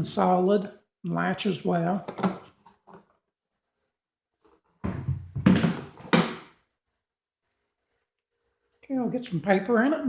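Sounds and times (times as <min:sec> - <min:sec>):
wooden case clunks and knocks: 0:04.8 - 0:06.4.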